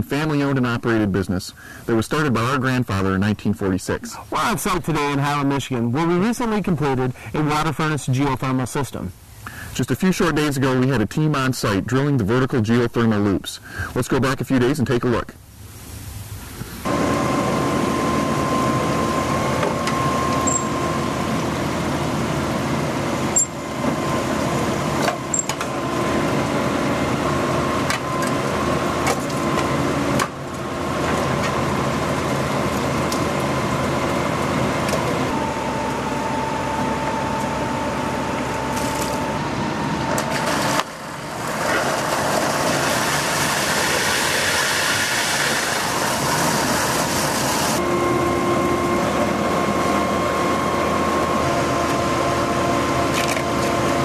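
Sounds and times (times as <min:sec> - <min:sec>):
drilling rig engine running: 0:16.8 - 0:54.0.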